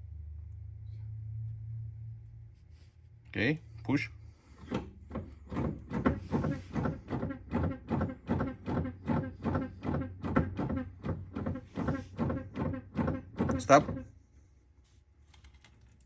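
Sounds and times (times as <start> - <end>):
brake pedal creaking clicks: 4.6 - 14.1.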